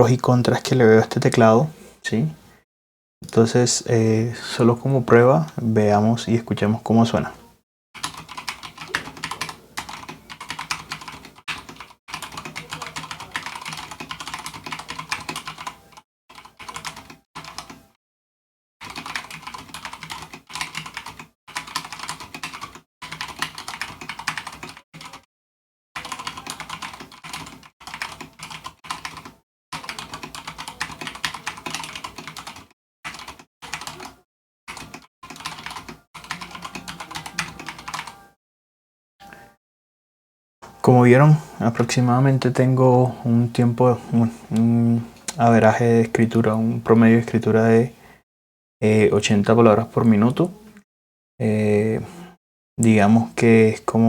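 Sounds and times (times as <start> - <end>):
fast mechanical keyboard typing: 8.0 - 17.8, 18.8 - 25.2, 26.0 - 38.2.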